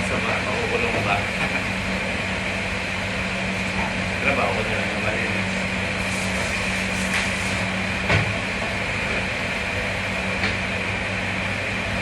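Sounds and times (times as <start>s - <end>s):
kitchen machinery humming: 0.0s - 12.0s.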